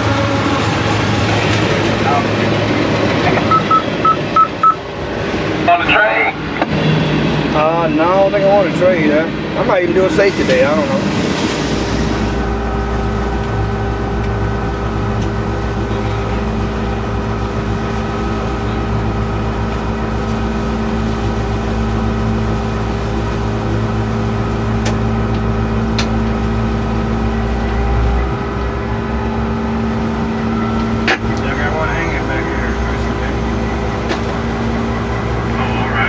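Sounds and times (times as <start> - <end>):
locomotive engine drone: 0.0 - 36.0
low rumble: 10.5 - 36.0
steady tones: 28.7 - 36.0.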